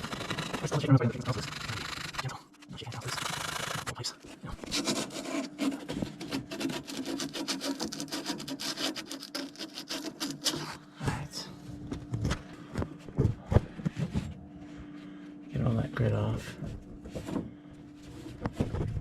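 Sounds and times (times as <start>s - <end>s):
sandpaper scrubbing copper pipe: 0.0s - 2.4s, 4.6s - 10.8s.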